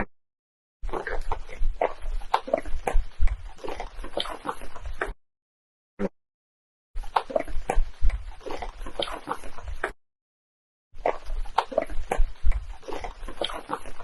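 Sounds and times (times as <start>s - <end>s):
crackles: 0.9s - 5.2s, 7.0s - 10.0s, 11.0s - 14.0s.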